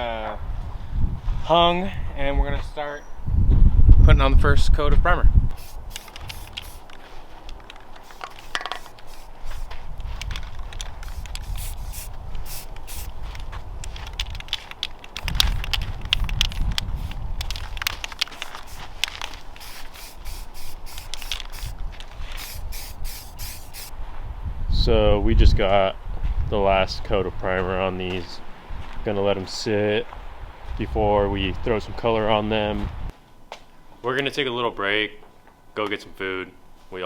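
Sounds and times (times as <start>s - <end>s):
spray paint hissing bursts: 5.5s - 7.0s, 8.0s - 9.8s, 11.0s - 13.2s, 15.2s - 17.2s, 18.2s - 23.9s.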